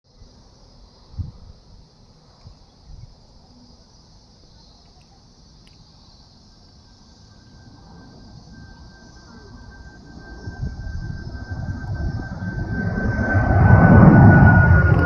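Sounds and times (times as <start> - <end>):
crickets chirping: 0.1 - 15.0
airliner engines whine: 5.6 - 15.0
low wind rumble: 7.2 - 15.0.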